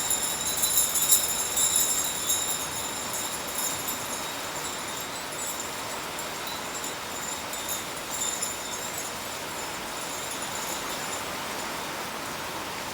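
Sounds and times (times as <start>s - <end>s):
rain pouring down: 0.0s - 12.9s.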